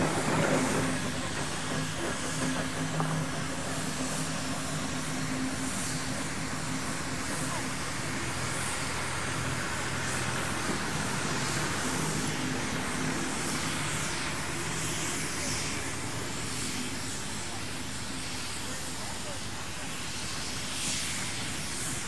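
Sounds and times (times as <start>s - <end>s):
vehicle engine running: 0.0s - 19.8s
outdoor noise: 0.0s - 22.0s.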